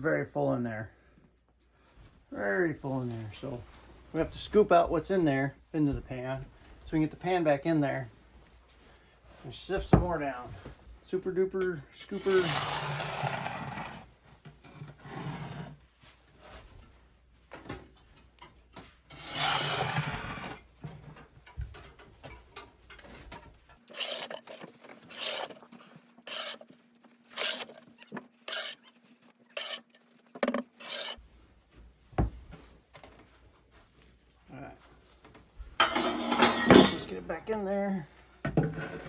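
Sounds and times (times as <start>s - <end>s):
metal scoop scraping ashes: 12.1s - 13.9s, 23.8s - 31.2s.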